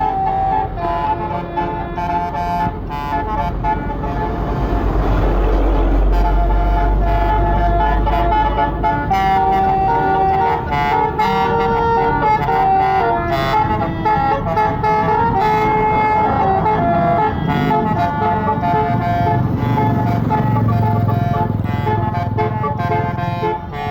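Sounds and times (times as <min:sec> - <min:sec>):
bus horn playing a tune: 0:00.0 - 0:23.9
low engine rumble: 0:00.0 - 0:23.9.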